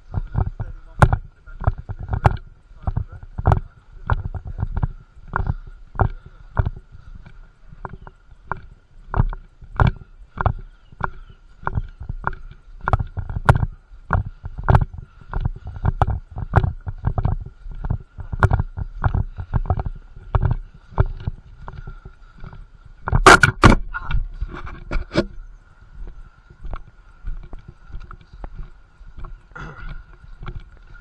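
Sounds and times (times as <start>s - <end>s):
walking footsteps thudding: 0.0s - 31.0s
sharp clacks: 23.2s - 23.8s.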